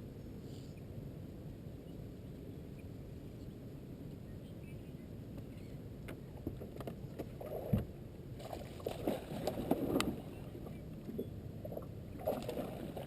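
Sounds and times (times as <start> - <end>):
water splashing against boat: 6.3 - 13.0.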